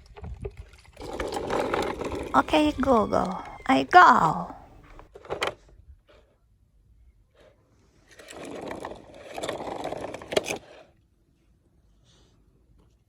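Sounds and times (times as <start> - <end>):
plastic toy wheels rolling: 0.4 - 3.6, 8.0 - 10.9.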